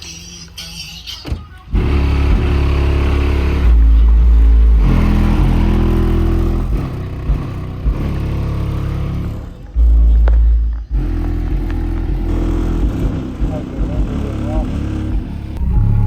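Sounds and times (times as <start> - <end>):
hip-hop beat with heavy bass: 0.0 - 16.0.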